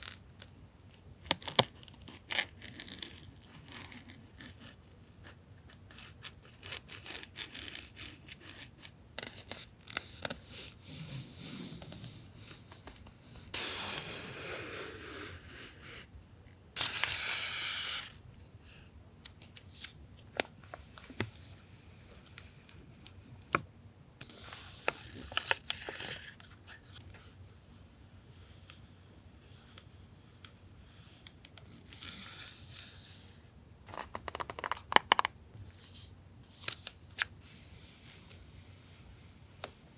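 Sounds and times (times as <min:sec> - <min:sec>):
paper and tape rustling: 0:24.2 - 0:27.1.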